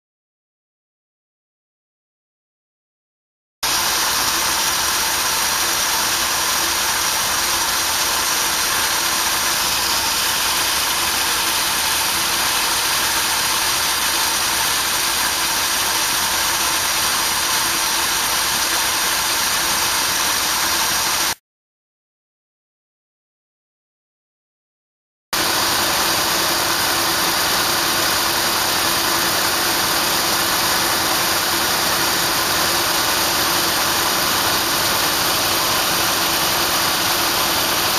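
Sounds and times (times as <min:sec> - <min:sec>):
truck engine idling roughly: 0:03.6 - 0:21.4, 0:25.4 - 0:37.9.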